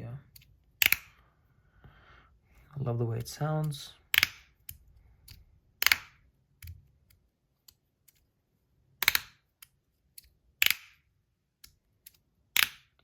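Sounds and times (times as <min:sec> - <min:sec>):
metal slider snapping: 0:00.8 - 0:01.1.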